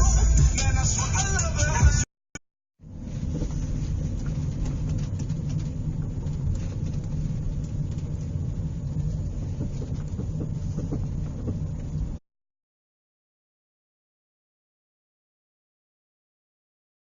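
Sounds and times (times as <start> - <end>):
car interior road rumble: 0.0 - 2.0, 2.8 - 12.2.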